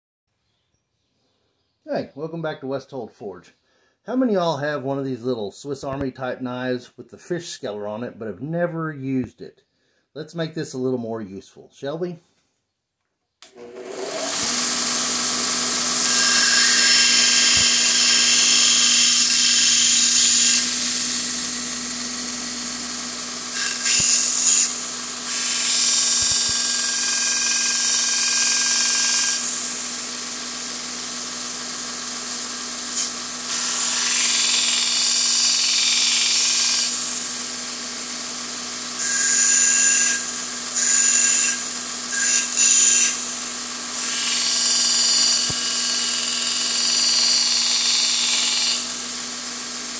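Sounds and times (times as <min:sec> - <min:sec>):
electric grinder humming: 0:13.5 - 0:49.9.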